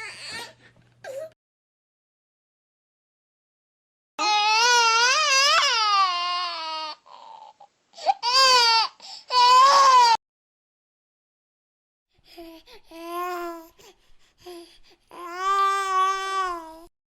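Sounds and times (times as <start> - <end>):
infant crying: 0.0 - 1.4, 4.2 - 10.2, 12.4 - 13.8, 15.1 - 16.9
infant whimpering: 12.4 - 16.9.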